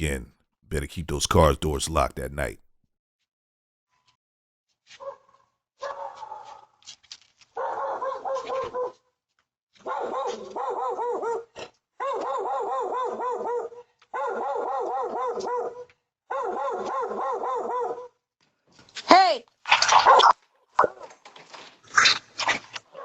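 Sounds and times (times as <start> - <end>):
dog barking: 5.0 - 6.7, 7.6 - 9.0, 9.8 - 18.2.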